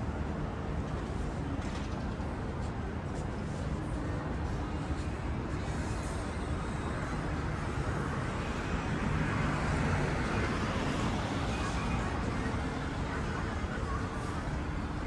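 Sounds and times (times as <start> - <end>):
road traffic: 0.0 - 15.0.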